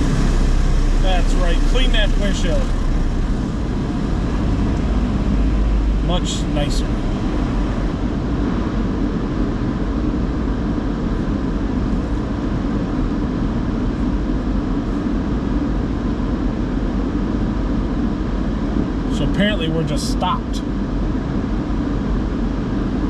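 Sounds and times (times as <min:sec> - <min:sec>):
car wash equipment rushing: 0:00.0 - 0:09.1.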